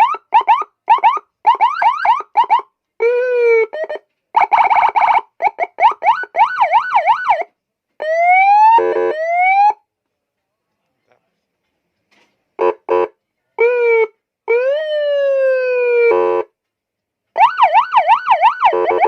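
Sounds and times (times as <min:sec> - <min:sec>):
police siren: 0:00.0 - 0:09.8, 0:13.6 - 0:16.3, 0:17.4 - 0:19.0.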